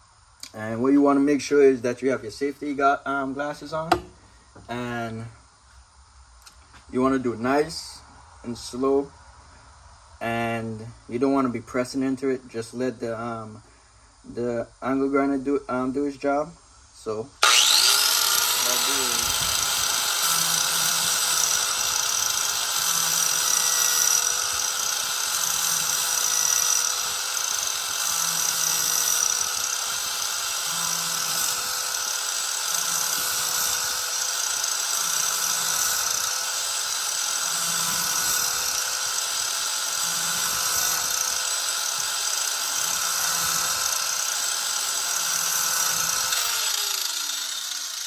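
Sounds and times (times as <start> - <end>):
angle grinder grinding steel: 17.4 - 48.0.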